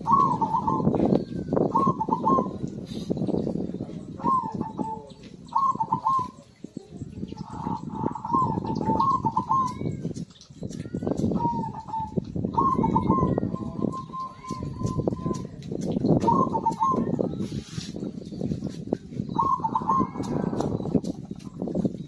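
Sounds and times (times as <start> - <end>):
dove cooing: 0.0 - 10.0, 11.3 - 15.4, 16.2 - 17.7, 19.2 - 21.6
small birds chirping: 0.0 - 22.0.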